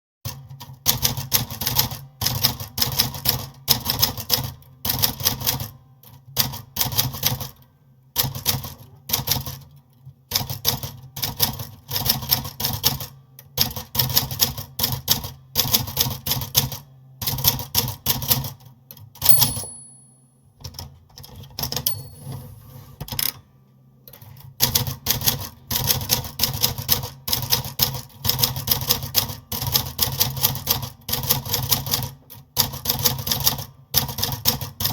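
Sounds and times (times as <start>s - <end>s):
typewriter bell ringing: 19.3s - 20.3s, 21.8s - 22.6s.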